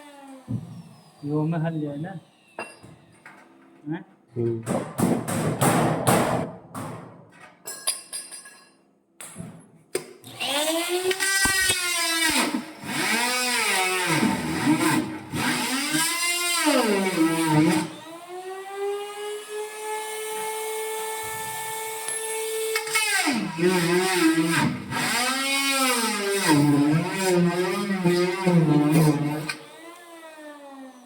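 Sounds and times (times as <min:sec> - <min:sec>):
electric drill boring metal: 0:10.2 - 0:31.0.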